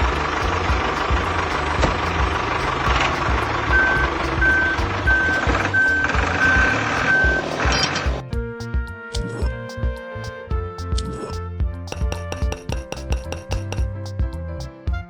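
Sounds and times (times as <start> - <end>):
engine running: 0.0 - 8.2
background music with a beat: 0.0 - 15.0
vehicle reversing alarm beeping: 3.1 - 8.1.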